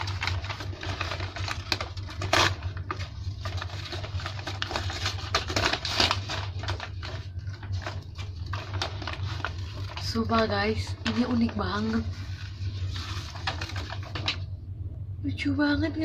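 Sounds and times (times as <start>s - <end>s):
packaging crackling and rustling: 0.0s - 14.5s
low hum: 0.0s - 16.0s.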